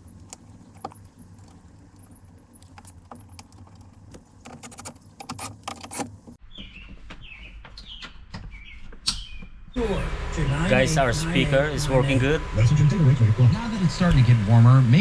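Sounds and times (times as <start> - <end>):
plastic parts clicking and rattling: 0.0 - 6.4.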